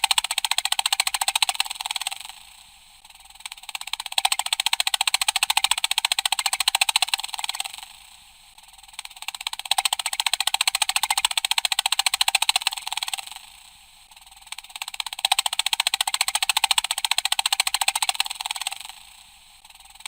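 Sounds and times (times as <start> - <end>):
computer keyboard clicking: 0.0 - 2.4, 3.3 - 7.8, 9.0 - 13.4, 14.5 - 19.0.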